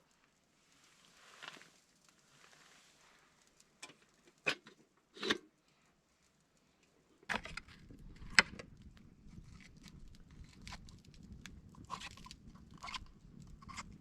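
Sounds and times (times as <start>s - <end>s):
steady crunching: 7.3s - 14.0s.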